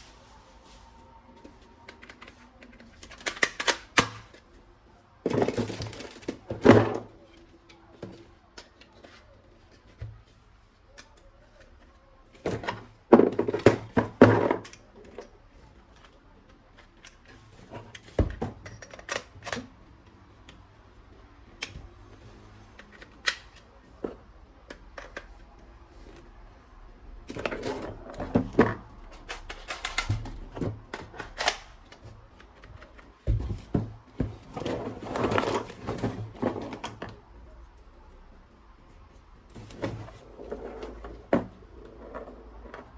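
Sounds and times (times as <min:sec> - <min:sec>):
plastic toy guns clicking and rattling: 0:01.9 - 0:04.5, 0:18.6 - 0:19.7, 0:27.4 - 0:33.0.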